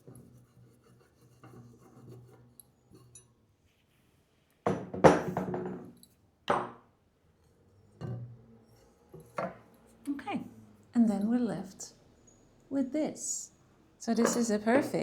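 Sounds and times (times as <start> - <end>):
metal chandelier parts clanking: 14.0 - 15.0.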